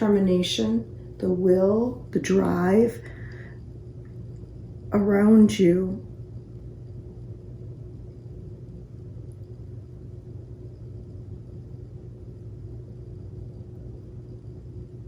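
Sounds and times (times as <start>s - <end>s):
person speaking: 0.0s - 3.4s, 4.9s - 6.0s
faint constant tone: 0.0s - 15.0s
low hum: 0.0s - 15.0s.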